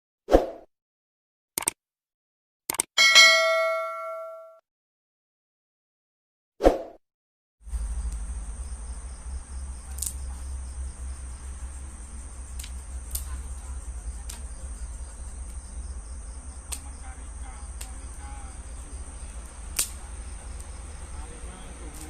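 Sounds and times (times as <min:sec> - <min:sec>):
crickets chirping: 0:07.6 - 0:22.0
steady low rumble: 0:07.7 - 0:22.0
faint clicks: 0:12.5 - 0:13.4, 0:17.8 - 0:18.0.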